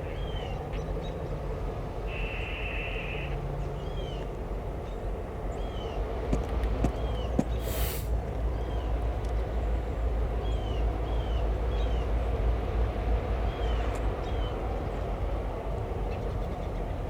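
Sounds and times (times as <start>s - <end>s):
diesel locomotives rumbling: 0.0s - 17.0s
short hiss: 7.6s - 8.2s.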